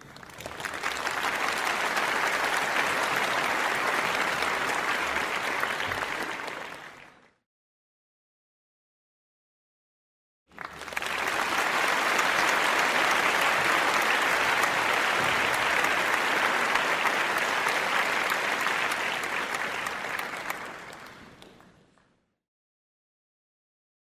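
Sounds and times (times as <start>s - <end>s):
crowd applause: 0.0s - 7.3s, 10.5s - 21.8s.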